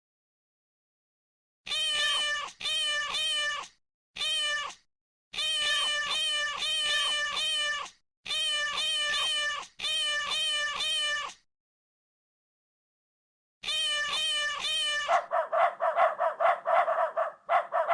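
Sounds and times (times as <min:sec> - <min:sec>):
cat meowing: 0:01.7 - 0:11.4, 0:13.6 - 0:17.9.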